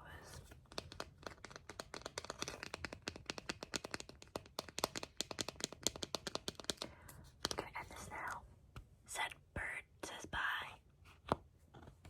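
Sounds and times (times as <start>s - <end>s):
fingers tapping rapidly: 0.7s - 6.9s.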